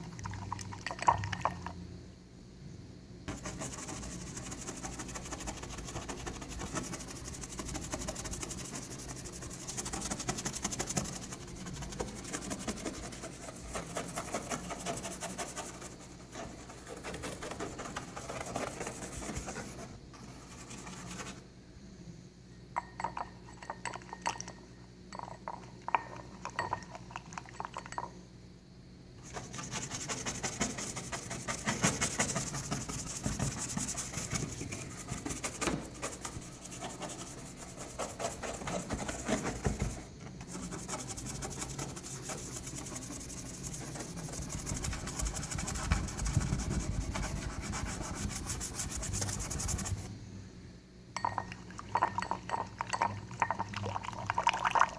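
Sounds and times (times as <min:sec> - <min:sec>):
fast scrubbing on car paint: 0:03.3 - 0:21.4, 0:29.3 - 0:50.1.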